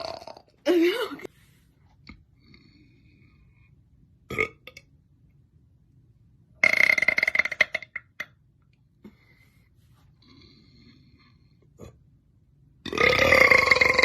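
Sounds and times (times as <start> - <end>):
woman burping: 0.0 - 1.3, 12.8 - 14.0.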